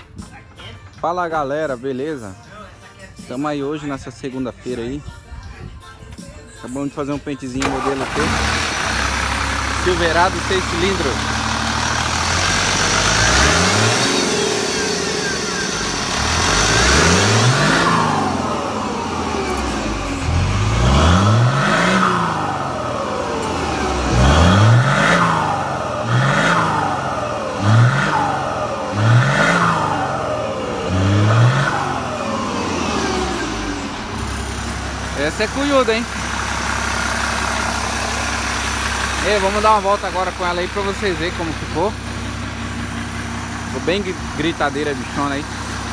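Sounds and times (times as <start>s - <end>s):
diesel engine revving: 7.6s - 45.9s.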